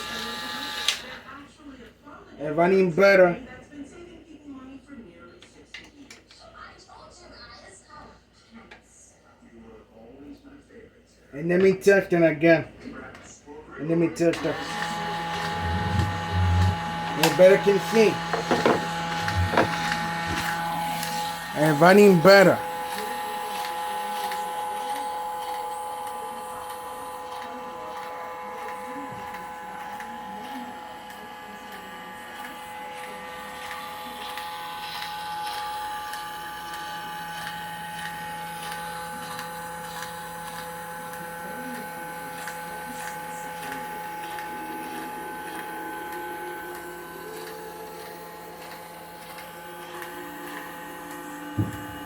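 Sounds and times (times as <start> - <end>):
small electric motor whining: 0.0 - 1.4, 14.4 - 52.0.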